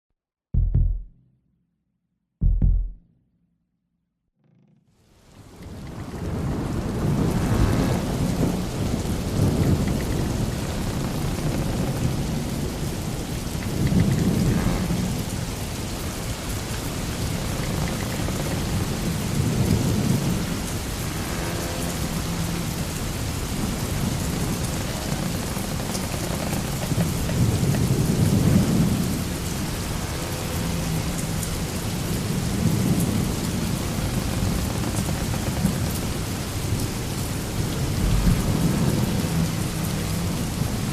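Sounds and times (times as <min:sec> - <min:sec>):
storm wind: 0:05.2 - 0:40.9
water rushing: 0:05.2 - 0:40.9
deep rumbling swells: 0:27.9 - 0:40.9.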